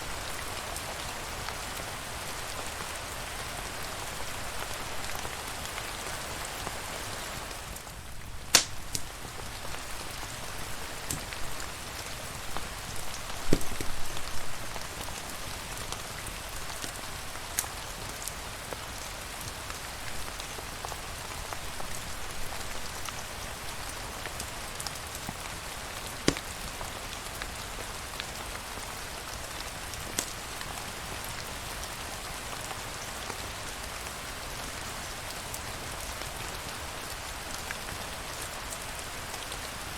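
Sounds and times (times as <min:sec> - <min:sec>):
steady rain falling: 0:00.0 - 0:39.9
sharp pops and clicks: 0:08.5 - 0:09.1, 0:13.5 - 0:14.0, 0:26.3 - 0:26.5.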